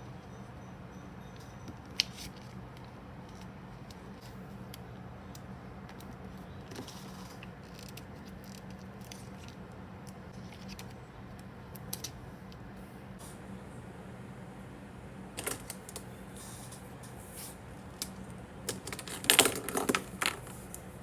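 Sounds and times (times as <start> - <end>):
small clicks: 15.4 - 16.1
paper rustling: 15.4 - 21.0.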